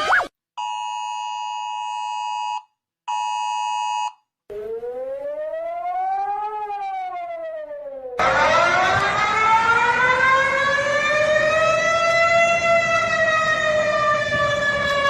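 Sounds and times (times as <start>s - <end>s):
rising siren alarm tone: 4.5s - 15.0s.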